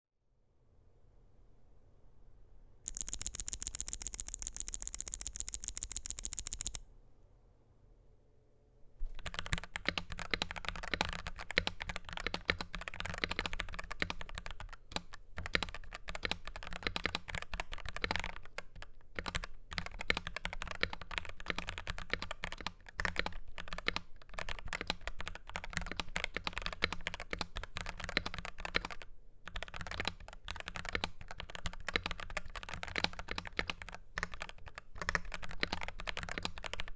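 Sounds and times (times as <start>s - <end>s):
mechanical keyboard typing: 2.9s - 6.8s, 9.1s - 36.9s
rapid sharp high clicks: 2.9s - 6.8s.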